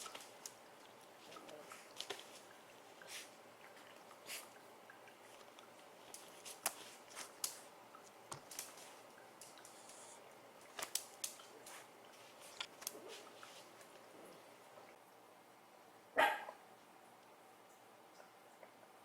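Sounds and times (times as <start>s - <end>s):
kittens clicking and scratching: 5.4s - 14.0s.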